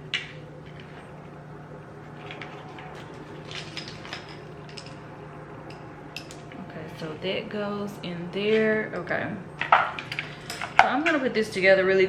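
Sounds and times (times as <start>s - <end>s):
steady low hum: 0.0s - 12.0s
plastic parts and screws clinking: 2.2s - 5.0s.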